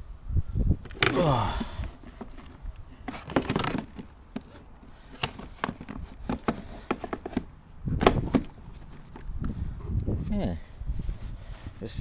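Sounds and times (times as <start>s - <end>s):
hands handling equipment: 0.8s - 10.1s.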